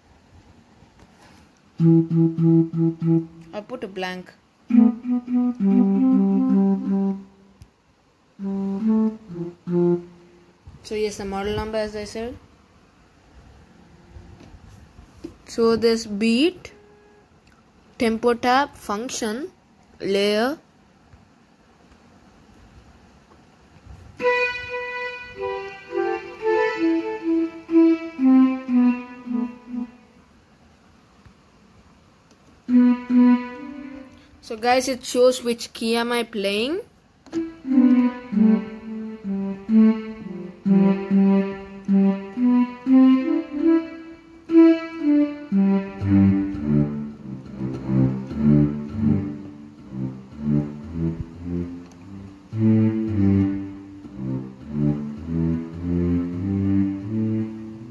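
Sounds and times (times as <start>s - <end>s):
low keyboard accompaniment: 1.7s - 4.0s, 4.6s - 12.2s, 24.1s - 30.4s, 32.4s - 34.8s, 37.2s - 57.9s
digital keyboard melody: 1.8s - 3.6s, 4.6s - 7.6s, 8.4s - 10.6s, 24.2s - 30.2s, 32.6s - 34.3s, 37.3s - 57.9s.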